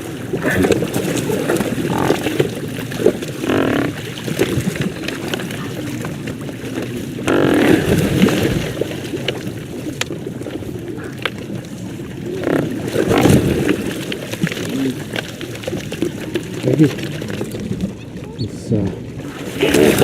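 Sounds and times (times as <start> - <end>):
pelicans giving low calls: 0.3 - 6.2, 7.0 - 8.8, 10.9 - 15.2, 16.7 - 20.0.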